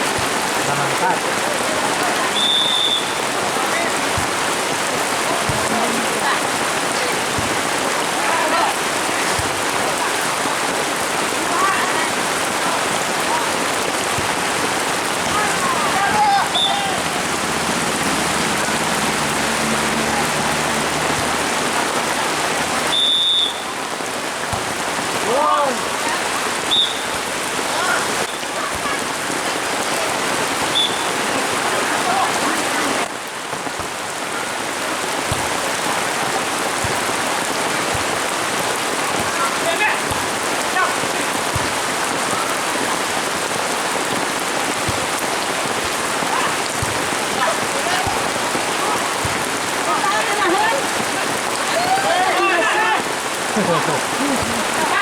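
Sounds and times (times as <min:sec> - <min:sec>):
heavy rain: 0:00.0 - 0:55.0
short high whistle blast: 0:22.9 - 0:23.7.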